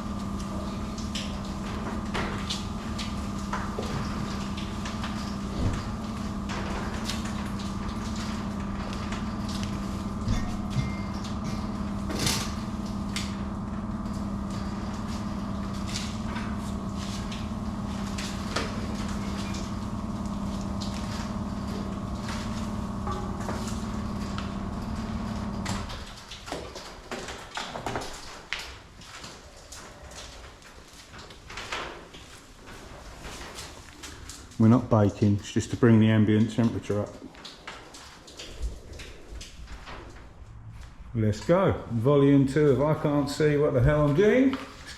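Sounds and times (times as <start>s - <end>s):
workshop machinery humming: 0.0s - 30.3s, 30.9s - 44.9s.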